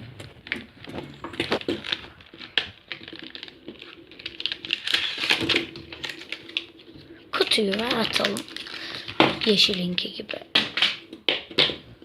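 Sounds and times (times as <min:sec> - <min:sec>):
plastic packaging clicks and taps: 0:07.5 - 0:09.9, 0:10.5 - 0:11.8.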